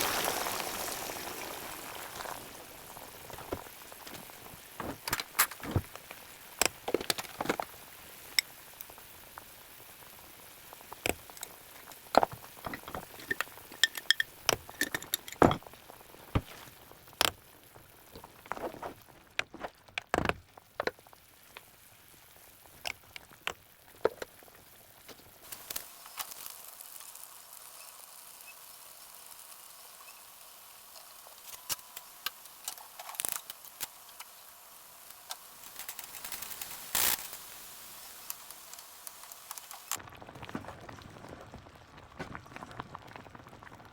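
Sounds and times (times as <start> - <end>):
faint steady hiss: 0.0 - 40.0
utensils knocking dishes and pans: 11.9 - 15.7.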